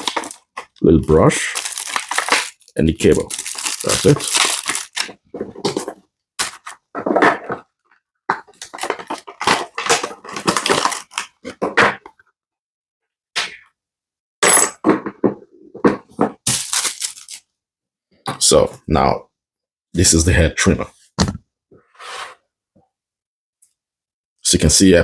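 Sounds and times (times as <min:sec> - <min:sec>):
packaging crackling and rustling: 0:00.0 - 0:06.8, 0:08.5 - 0:11.4, 0:16.5 - 0:17.4.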